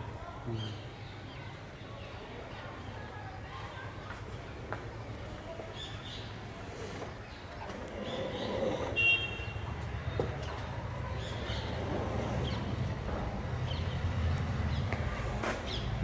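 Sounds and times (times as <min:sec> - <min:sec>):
birds chirping: 0:04.7 - 0:15.0.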